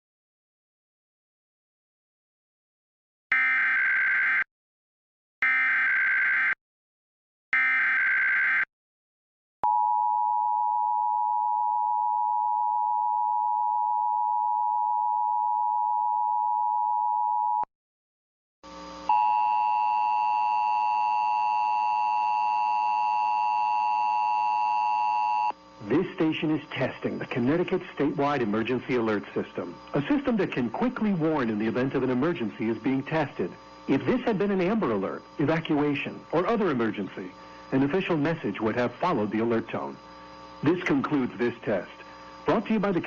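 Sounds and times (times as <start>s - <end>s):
buzzy steady tone: 18.7s - 19.4s, 25.5s - 43.0s.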